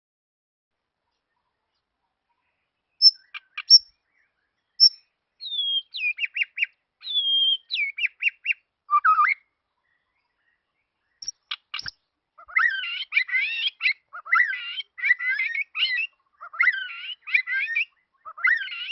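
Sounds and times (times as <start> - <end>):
songbird whistling: 3.0 - 4.0, 4.7 - 9.5, 11.2 - 18.9.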